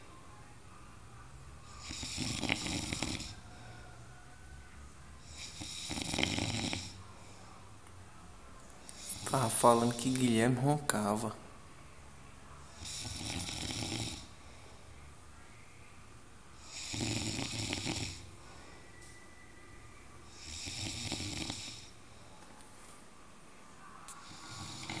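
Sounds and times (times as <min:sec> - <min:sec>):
person snoring: 0:01.8 - 0:04.0, 0:05.2 - 0:07.0, 0:09.0 - 0:09.8, 0:12.8 - 0:14.4, 0:16.6 - 0:18.3, 0:20.3 - 0:22.0, 0:24.2 - 0:25.0.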